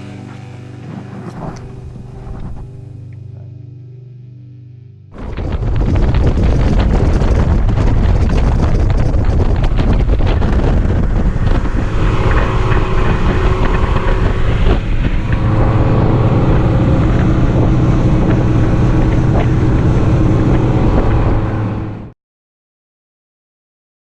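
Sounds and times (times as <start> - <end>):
outboard motor running: 0.0 - 3.4, 5.1 - 22.1
wind buffeting microphone: 0.8 - 2.8, 5.2 - 22.1.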